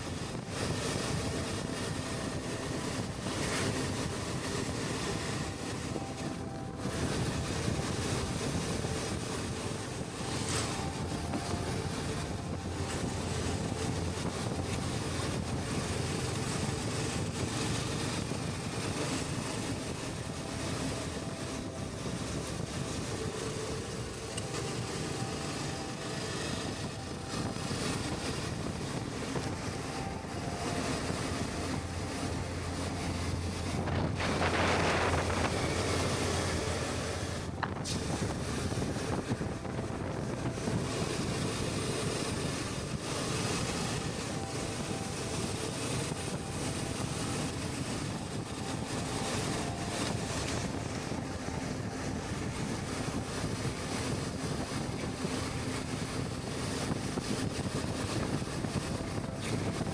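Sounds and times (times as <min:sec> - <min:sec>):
motorcycle engine drone: 0:00.0 - 0:59.9
wind buffeting microphone: 0:00.0 - 0:59.9
loud rush: 0:26.3 - 0:48.6.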